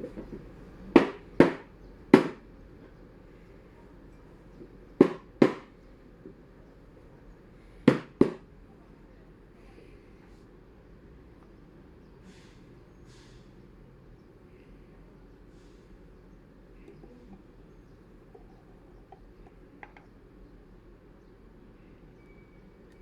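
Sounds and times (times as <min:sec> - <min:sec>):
knocks on a hard surface: 0:01.0 - 0:02.4, 0:05.0 - 0:05.7, 0:07.9 - 0:08.4.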